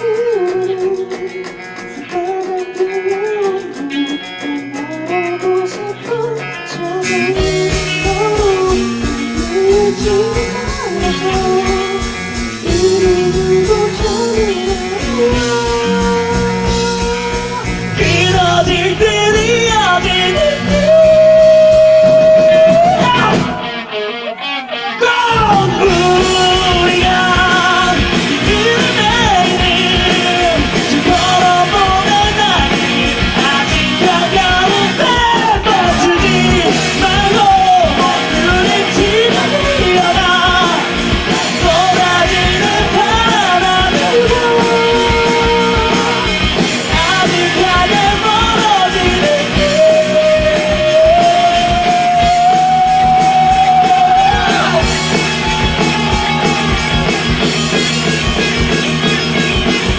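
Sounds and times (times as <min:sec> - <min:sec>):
lead vocal singing: 0:00.0 - 0:59.9
live rock band playing: 0:00.0 - 0:59.9.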